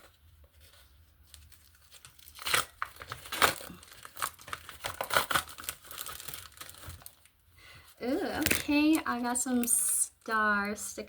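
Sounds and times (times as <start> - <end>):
packaging crinkling and tearing: 0.0 - 7.4.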